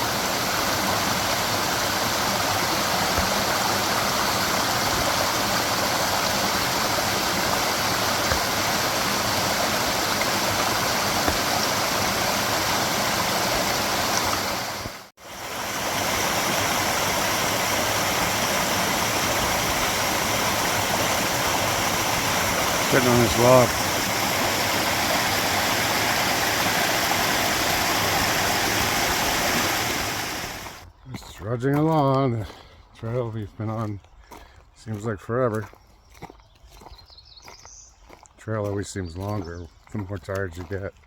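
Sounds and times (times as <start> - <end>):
waterfall roaring: 0.0 - 30.8.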